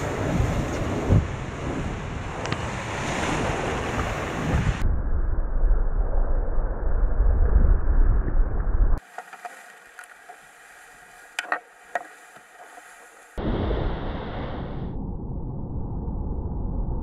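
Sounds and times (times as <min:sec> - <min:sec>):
wind buffeting microphone: 0:00.0 - 0:05.6
low wind rumble: 0:00.0 - 0:17.0
rushing water: 0:09.0 - 0:13.4.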